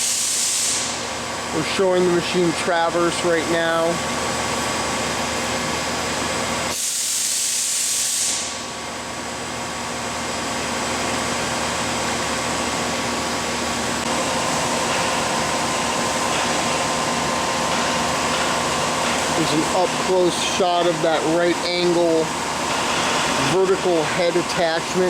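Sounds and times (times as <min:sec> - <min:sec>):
sharp hiss of air: 0:00.0 - 0:01.1, 0:06.7 - 0:08.8
boring mill machine whir: 0:00.9 - 0:06.7, 0:08.6 - 0:25.0.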